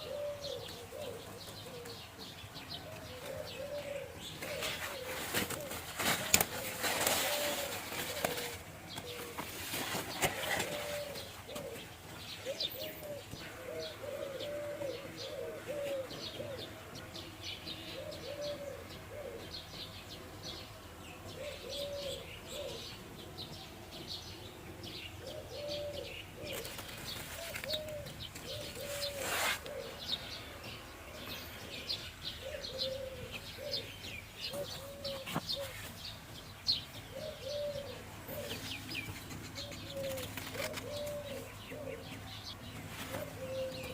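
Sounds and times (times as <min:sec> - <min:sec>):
doves cooing: 0:00.0 - 0:43.9
small birds chirping rapidly: 0:00.0 - 0:43.9.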